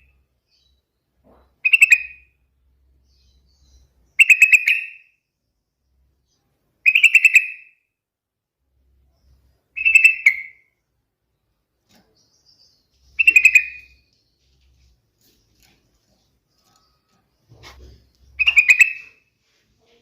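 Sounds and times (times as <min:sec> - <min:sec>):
bird singing whistled notes: 0:06.8 - 0:07.8, 0:09.8 - 0:10.8, 0:12.2 - 0:14.1, 0:18.2 - 0:19.2.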